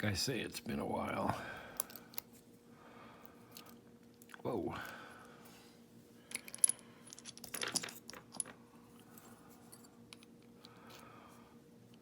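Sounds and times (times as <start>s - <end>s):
metal lock pins clinking: 6.3s - 8.6s.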